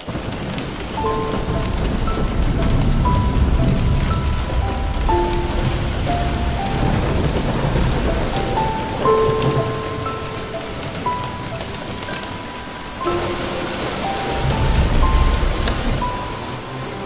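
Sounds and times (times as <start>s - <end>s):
heavy rain: 0.0s - 17.0s
slow melody of held notes: 0.2s - 17.0s.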